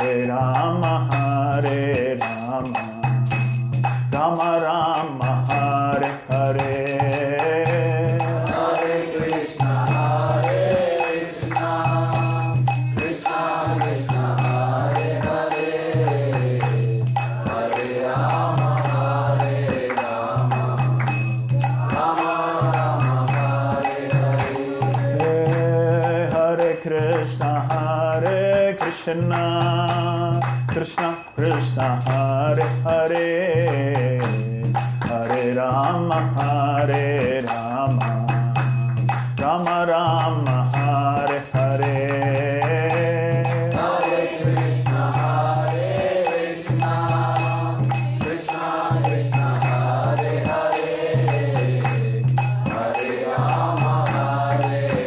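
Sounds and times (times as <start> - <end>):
devotional singing: 0.0 - 3.5, 4.1 - 55.0
instrumental accompaniment: 0.0 - 55.0
regular percussion beat: 0.0 - 55.0.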